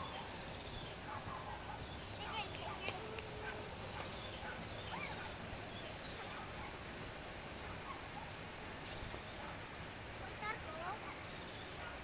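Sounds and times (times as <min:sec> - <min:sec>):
faint bird calls: 0:00.0 - 0:06.8
steady hiss: 0:00.0 - 0:12.0.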